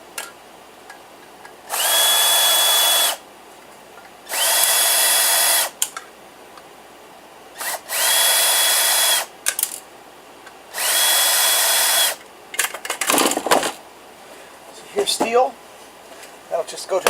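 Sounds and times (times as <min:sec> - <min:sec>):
power drill whining: 0:01.7 - 0:03.2, 0:04.3 - 0:05.8, 0:07.6 - 0:09.3, 0:10.7 - 0:12.2.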